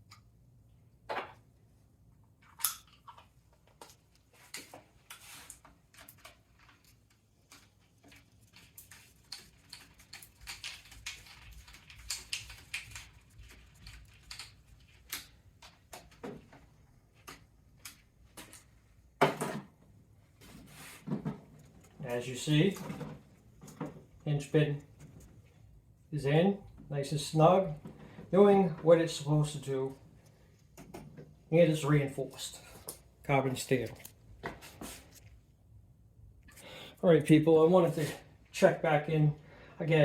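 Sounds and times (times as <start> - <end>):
small parts clicking and scraping: 2.4 - 16.2.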